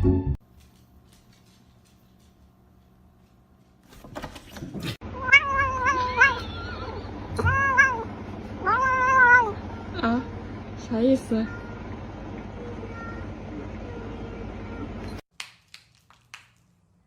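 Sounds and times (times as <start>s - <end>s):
cat meowing: 5.1s - 9.6s.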